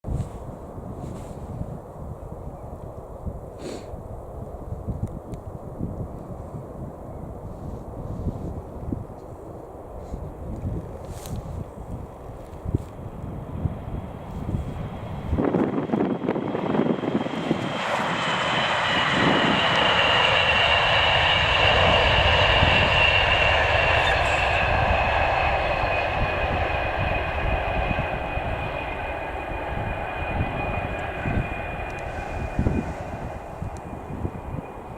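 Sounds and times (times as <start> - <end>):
train passing at speed: 11.6 - 34.9
high whine falling in pitch: 19.1 - 34.9.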